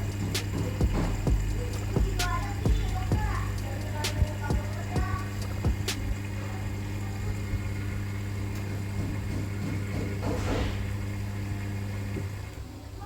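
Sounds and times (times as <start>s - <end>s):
washing machine hum: 0.0s - 13.0s.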